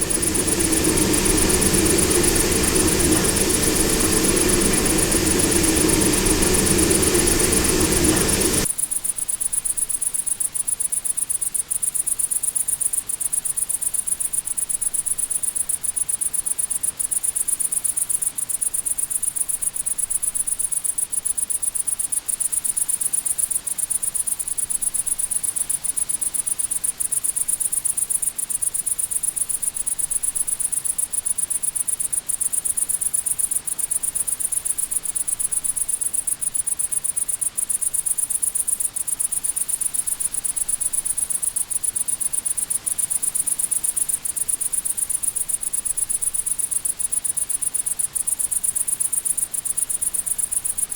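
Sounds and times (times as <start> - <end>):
crickets chirping: 0.0 - 8.7, 30.2 - 50.9
train noise with steady tones: 0.0 - 8.7, 27.1 - 50.9.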